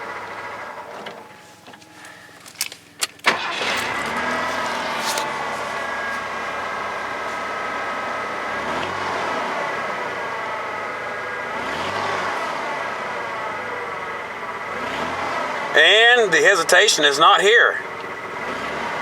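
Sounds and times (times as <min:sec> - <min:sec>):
engine revving up: 0:03.3 - 0:16.4, 0:18.2 - 0:19.0.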